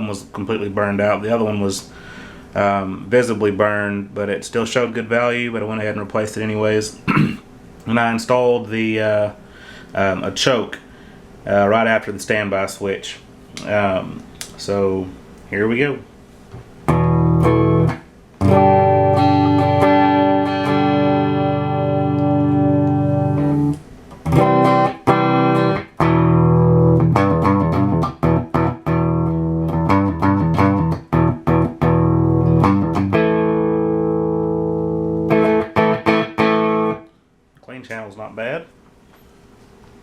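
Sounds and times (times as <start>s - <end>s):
electric guitar chords: 16.9s - 37.0s.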